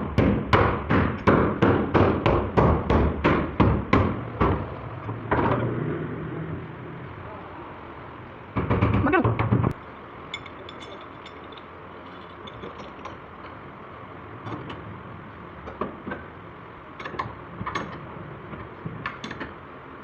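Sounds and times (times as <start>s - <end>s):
hammer blows on car body metal: 0.0s - 4.8s.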